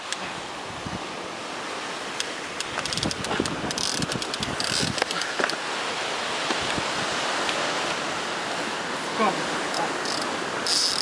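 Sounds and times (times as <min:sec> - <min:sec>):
wind on microphone: 0:00.0 - 0:01.2, 0:02.6 - 0:08.7
sea surf: 0:00.0 - 0:11.0.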